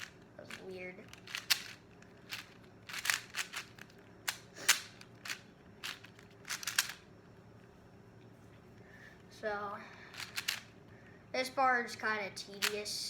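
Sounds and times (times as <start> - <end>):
plastic puzzle cube clacking: 0.0 - 7.0, 10.1 - 10.7.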